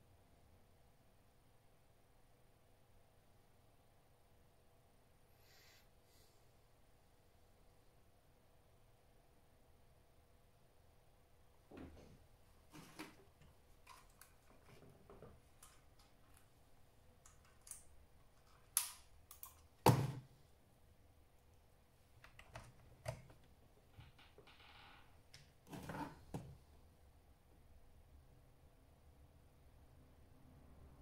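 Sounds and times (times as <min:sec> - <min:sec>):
laptop parts clicking and knocking: 0:17.2 - 0:20.2, 0:22.2 - 0:23.5.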